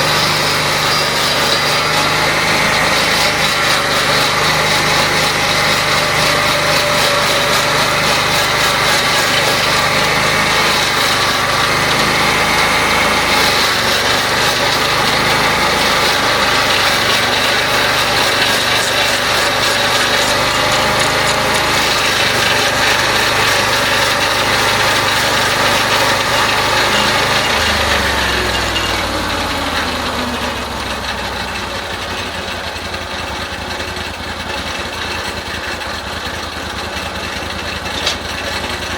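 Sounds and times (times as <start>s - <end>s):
small engine running: 0.0s - 38.9s.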